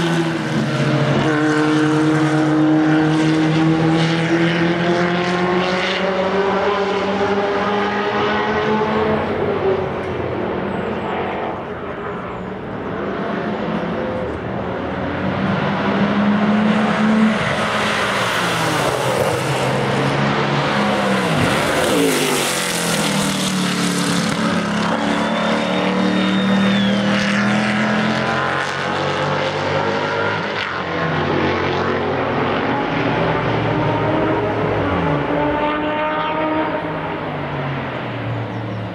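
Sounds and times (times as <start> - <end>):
racing cars passing at speed: 0.0 - 38.9.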